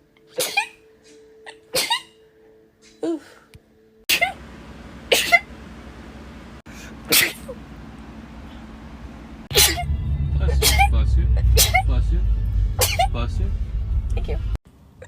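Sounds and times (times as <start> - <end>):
low steady hum: 4.1 - 15.0
person sneezing: 6.8 - 7.6, 9.5 - 9.9, 12.8 - 13.1.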